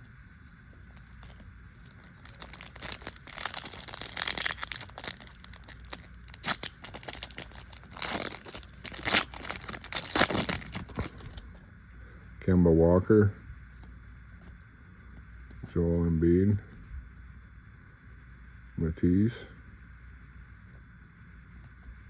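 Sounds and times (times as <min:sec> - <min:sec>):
plastic wrapper crinkling and tearing: 0:00.8 - 0:11.6.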